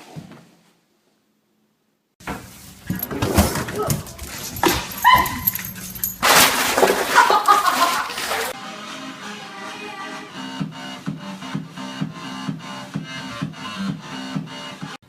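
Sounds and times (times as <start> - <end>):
dog vocalizing: 3.8 - 6.2.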